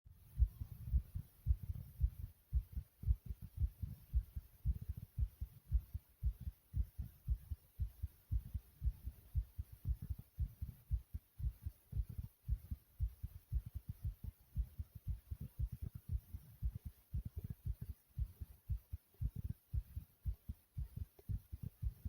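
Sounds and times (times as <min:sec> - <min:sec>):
fast pounding heartbeat: 0:00.2 - 0:22.0.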